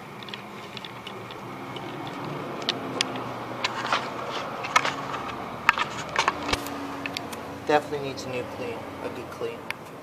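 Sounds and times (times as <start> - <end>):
metal parts clicking and knocking: 0.0 - 7.2
steady background hum: 0.0 - 10.0.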